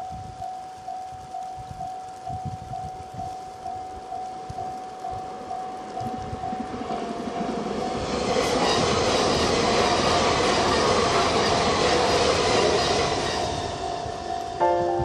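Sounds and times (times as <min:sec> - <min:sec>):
crossing warning bell ringing: 0:00.0 - 0:08.9, 0:12.7 - 0:15.0
train rushing on rails: 0:00.0 - 0:15.0.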